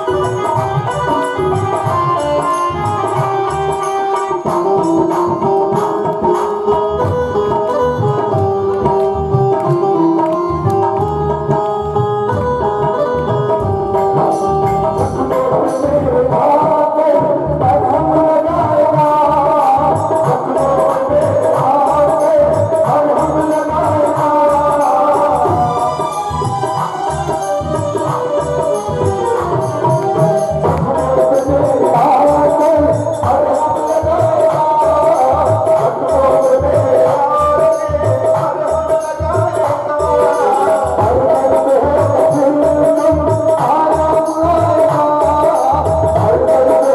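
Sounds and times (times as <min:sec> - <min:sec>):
melody with held notes: 0:00.0 - 0:16.1, 0:19.8 - 0:41.1
hand drums playing rhythm: 0:00.0 - 0:46.9.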